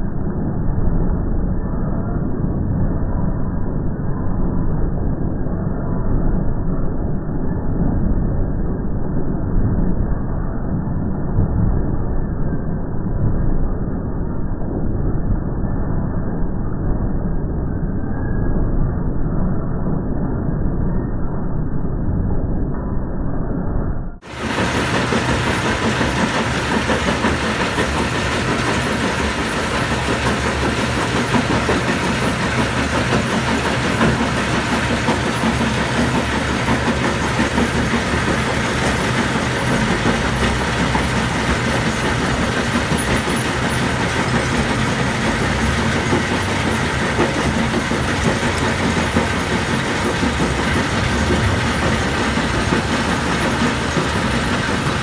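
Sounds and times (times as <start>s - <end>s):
engine humming: 24.2s - 55.0s
machinery rattling clatter: 24.2s - 55.0s.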